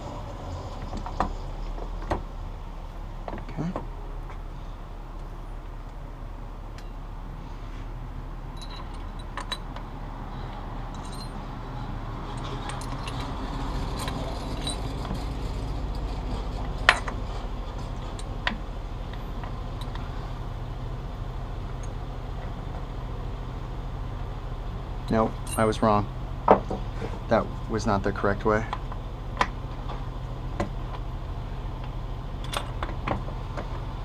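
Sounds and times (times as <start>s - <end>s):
metal parts clinking: 8.6s - 9.8s, 10.9s - 11.4s, 12.3s - 15.6s, 25.1s - 25.8s.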